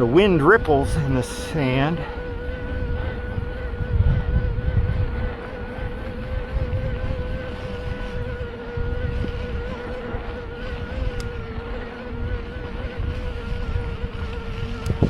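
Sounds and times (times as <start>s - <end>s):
high-pitched hum: 0.0s - 15.0s
wind rumbling on microphone: 0.0s - 15.0s.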